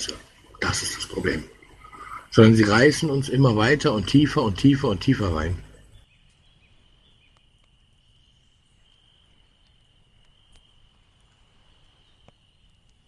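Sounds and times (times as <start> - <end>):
faint high-pitched whine: 0.0 - 13.0
faint clicks: 5.7 - 13.0.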